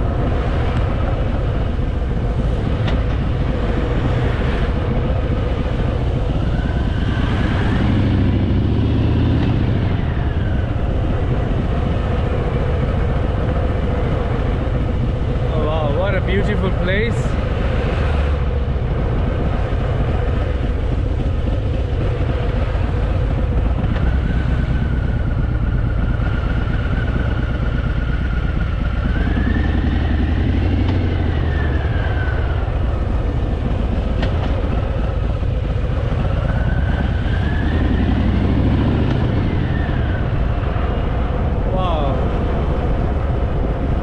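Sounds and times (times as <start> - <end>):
motorcycle engine running: 0.0 - 44.0.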